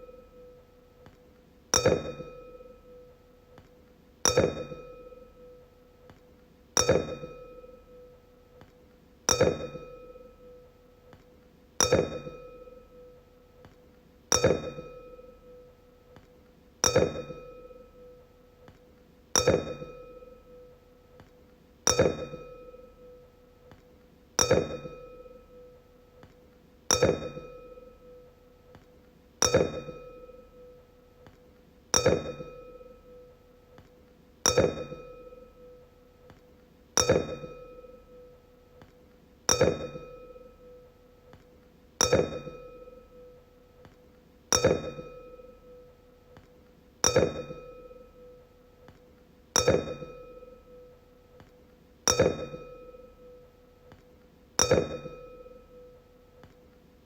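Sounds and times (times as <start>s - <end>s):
wine glass ringing when struck: 1.8s - 3.0s, 4.3s - 5.5s, 9.3s - 10.6s, 11.8s - 13.1s, 14.3s - 15.6s, 16.8s - 18.0s, 19.4s - 20.6s, 24.4s - 25.7s, 26.9s - 28.2s, 32.0s - 33.2s, 34.5s - 35.8s, 37.0s - 38.3s, 39.5s - 40.8s, 42.0s - 43.3s, 44.5s - 45.8s, 47.0s - 48.4s, 49.6s - 50.9s, 52.1s - 53.4s, 54.6s - 55.9s.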